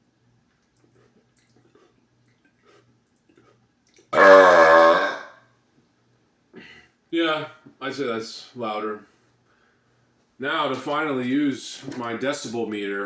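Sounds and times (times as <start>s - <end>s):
man burping loudly: 4.2s - 5.3s.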